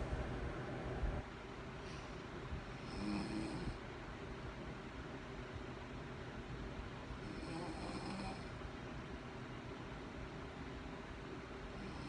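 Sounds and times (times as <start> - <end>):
low rumble: 0.0 - 1.2.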